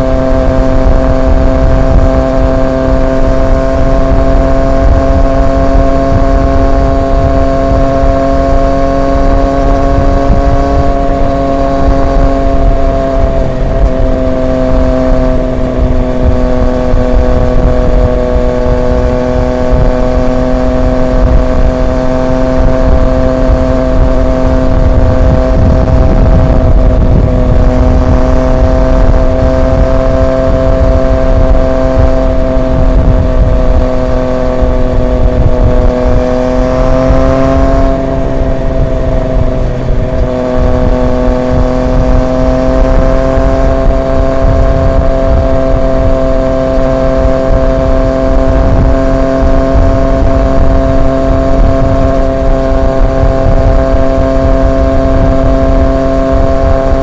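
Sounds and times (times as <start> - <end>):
motorcycle engine cruising: 0.0 - 57.0
wind and road noise: 0.0 - 57.0.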